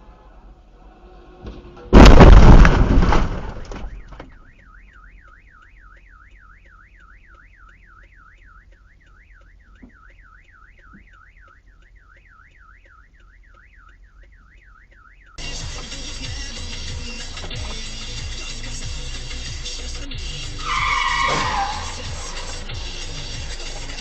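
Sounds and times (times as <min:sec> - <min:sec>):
car crash impact and crunch: 0:01.4 - 0:04.7, 0:20.6 - 0:22.5
car alarm warbling: 0:03.3 - 0:24.0.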